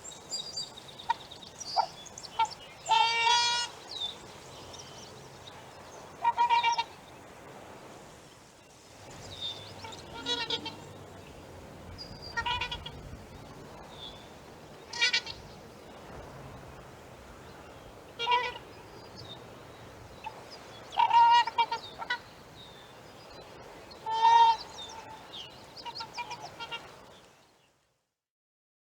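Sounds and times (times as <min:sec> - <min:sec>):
low background noise: 0:00.0 - 0:28.1
swans honking: 0:01.8 - 0:03.8, 0:05.6 - 0:07.0, 0:09.0 - 0:16.1, 0:17.0 - 0:23.0, 0:23.6 - 0:27.1.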